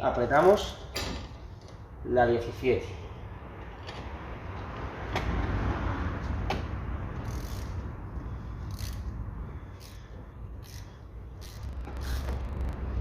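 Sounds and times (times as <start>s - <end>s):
ratchet wrench clicking: 7.1s - 7.9s, 8.6s - 12.4s.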